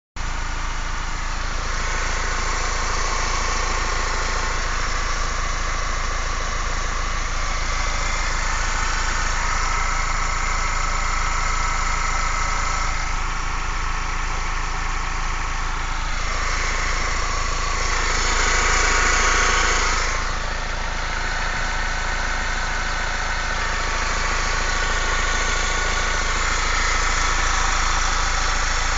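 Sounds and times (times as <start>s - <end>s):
vehicle engine idling: 0.2s - 28.9s.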